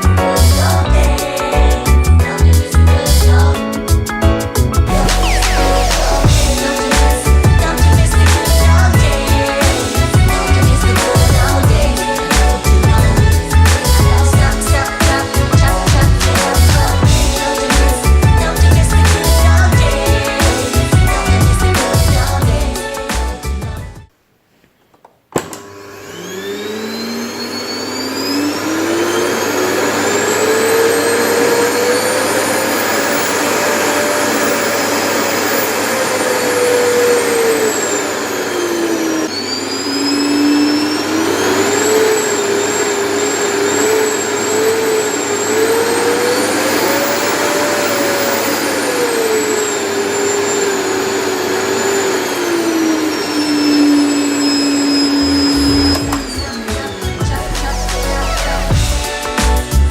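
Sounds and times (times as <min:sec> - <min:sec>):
vacuum cleaner motor whine: 0:00.0 - 0:02.8, 0:04.9 - 0:23.1, 0:25.3 - 0:59.9
vacuum cleaner switch click: 0:24.9 - 0:28.0, 0:54.4 - 0:56.7.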